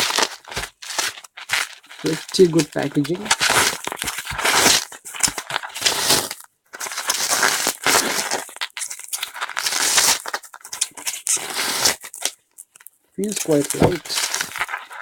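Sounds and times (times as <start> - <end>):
bubble wrap crinkling and crackling: 0.0 - 15.0.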